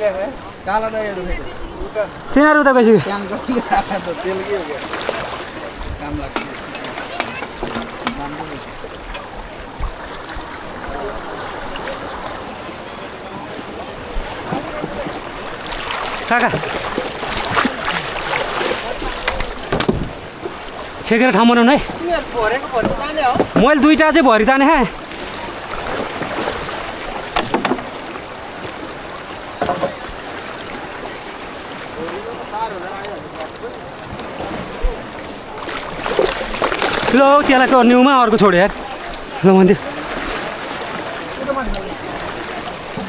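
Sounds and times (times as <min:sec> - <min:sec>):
faint voices: 0:00.0 - 0:43.0
flood river rushing: 0:00.0 - 0:43.0
wind on microphone: 0:05.0 - 0:21.0, 0:33.2 - 0:37.1.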